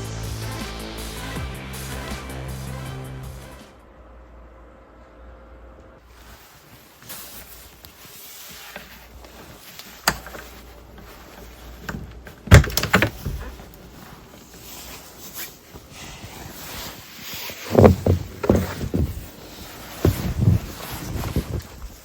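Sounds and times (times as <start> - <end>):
thumps and knocks: 11.7 - 13.6, 17.7 - 21.8.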